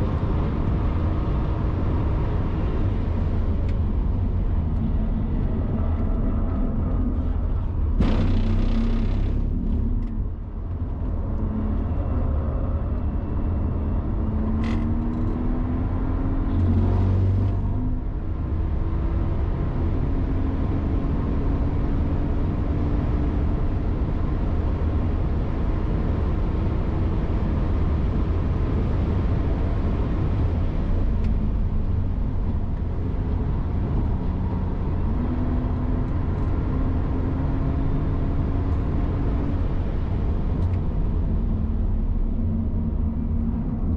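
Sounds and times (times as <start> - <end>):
race car engine accelerating: 8.0 - 10.1.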